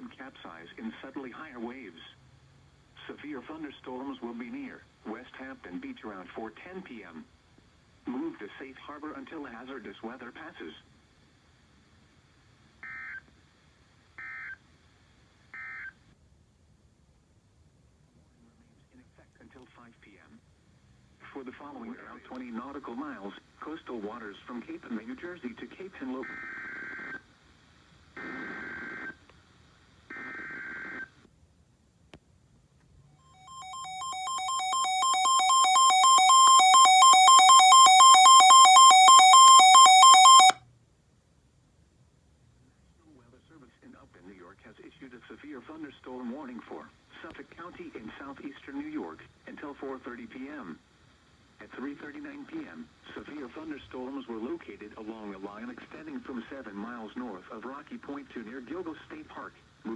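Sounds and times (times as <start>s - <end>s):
faint radio hiss: 0.0s - 59.9s
warbling digital data tones: 33.4s - 40.6s.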